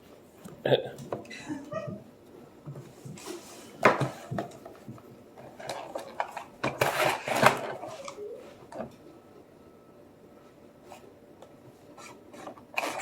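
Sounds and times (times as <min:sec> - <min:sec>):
packaging rustling and scraping: 0:02.8 - 0:08.7, 0:11.9 - 0:13.0.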